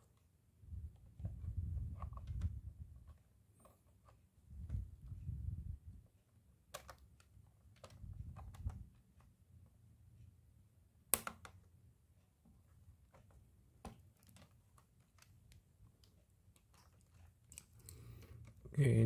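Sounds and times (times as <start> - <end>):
sharp plastic clicks: 6.6 - 8.9, 11.1 - 11.6.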